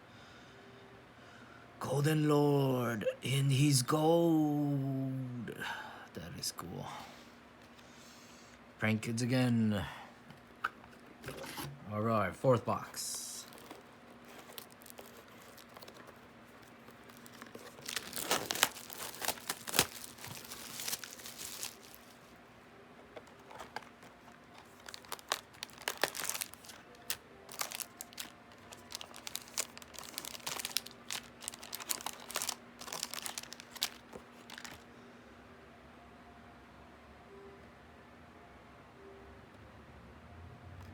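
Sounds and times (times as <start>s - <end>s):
plastic wrapping crinkling: 12.9s - 22.3s, 23.2s - 34.8s.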